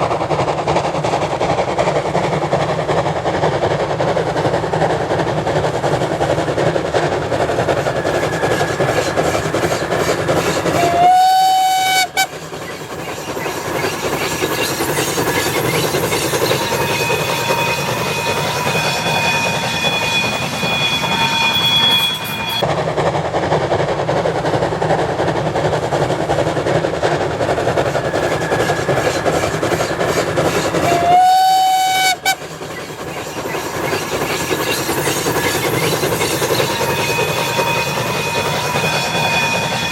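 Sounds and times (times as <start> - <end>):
steam locomotive running: 0.0 - 39.9
steam whistle blasts: 10.7 - 12.4, 16.5 - 22.6, 30.8 - 32.4, 36.6 - 39.9.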